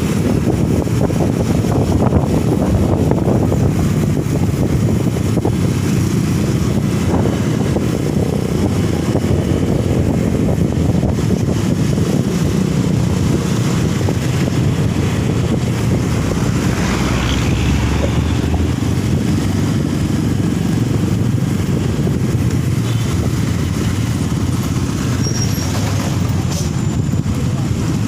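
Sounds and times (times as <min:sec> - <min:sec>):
vehicle engine and road noise: 0:00.0 - 0:28.0.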